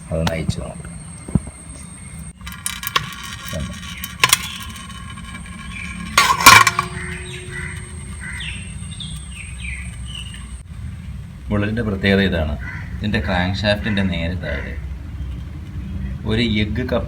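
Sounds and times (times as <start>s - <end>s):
loud ringing metal clank: 2.4s - 10.6s
spanner clinking on metal: 2.4s - 10.6s.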